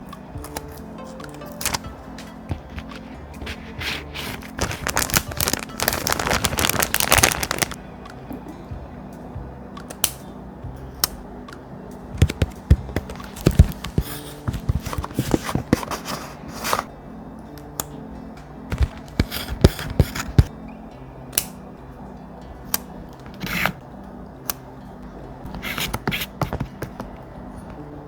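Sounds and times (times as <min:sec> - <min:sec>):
soft background music: 0:00.0 - 0:28.0
paper taps and rustles: 0:01.2 - 0:07.8, 0:12.2 - 0:16.9, 0:18.7 - 0:20.5, 0:25.5 - 0:27.2
thick paper crinkling: 0:01.3 - 0:07.8, 0:12.2 - 0:16.9, 0:18.7 - 0:20.5, 0:25.5 - 0:27.2.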